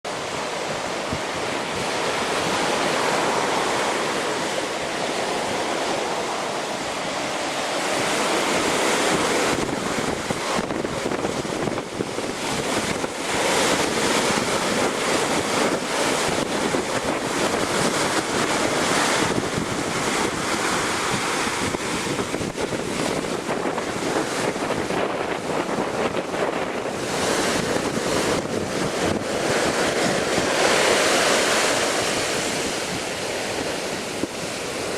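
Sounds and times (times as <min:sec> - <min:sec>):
waves breaking against sea wall: 0:00.1 - 0:34.9
wind buffeting microphone: 0:00.1 - 0:34.9.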